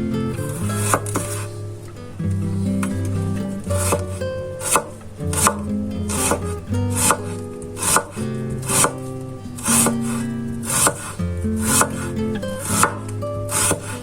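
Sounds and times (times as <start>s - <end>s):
knife chopping on cutting board: 4.6s - 5.6s, 6.2s - 6.4s, 7.8s - 9.0s, 10.7s - 11.1s, 11.7s - 12.0s.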